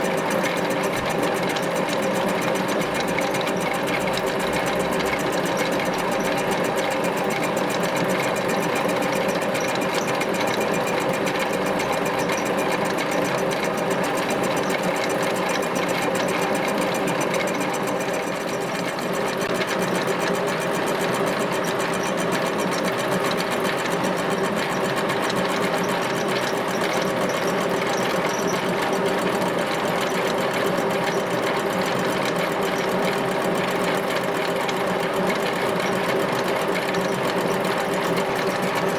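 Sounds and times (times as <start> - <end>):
machine clattering: 0.0 - 19.8, 33.7 - 38.9.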